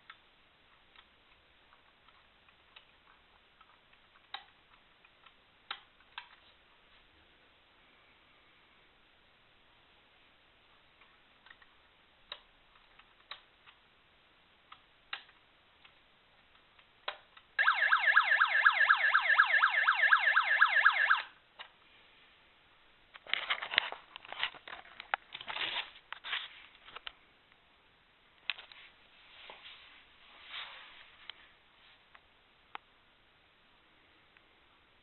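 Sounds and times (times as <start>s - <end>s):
toy electronic police siren: 17.6s - 21.4s.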